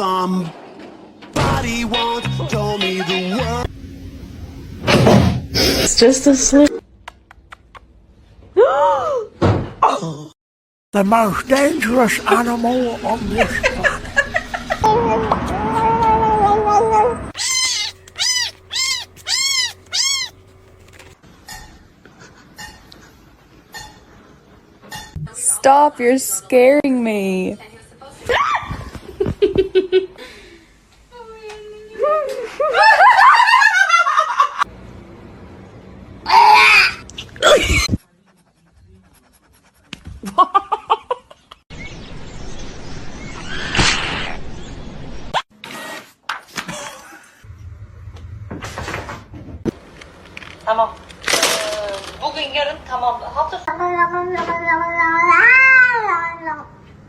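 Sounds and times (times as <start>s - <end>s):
person laughing: 13.3s - 15.5s, 40.2s - 41.6s, 46.6s - 47.5s
cat meowing: 15.7s - 20.4s.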